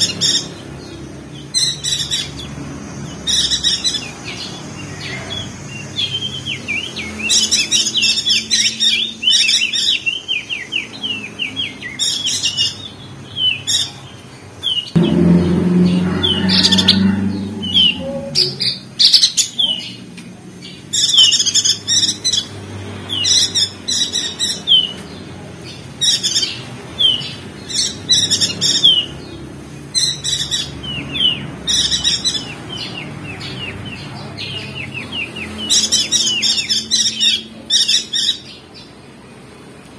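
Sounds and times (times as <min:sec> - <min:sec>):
bird chattering song: 0:00.0 - 0:39.0
low rumble: 0:15.0 - 0:19.0.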